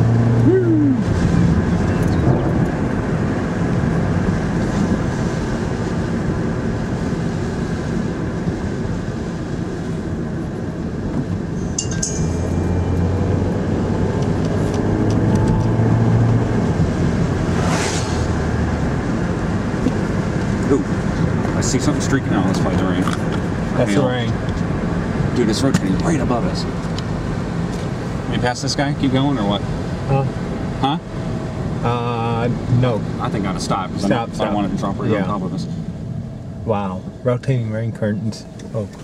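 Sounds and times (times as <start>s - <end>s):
car engine and road noise: 0.0s - 39.0s
short rushing sound: 17.4s - 18.8s.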